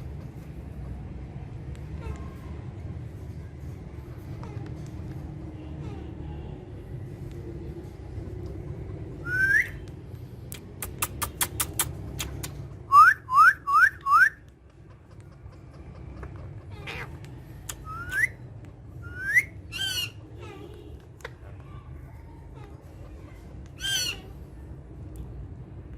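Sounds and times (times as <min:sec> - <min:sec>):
parrot whistling rising notes: 0:09.2 - 0:09.8, 0:12.9 - 0:14.4, 0:19.0 - 0:20.0
sharp clicks: 0:09.9 - 0:12.7, 0:17.6 - 0:18.3.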